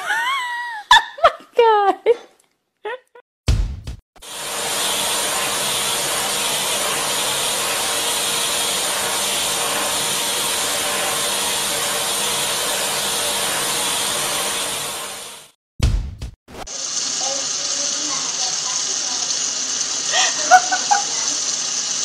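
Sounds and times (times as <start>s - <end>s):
steady rushing hiss: 4.2s - 15.5s, 16.7s - 22.0s.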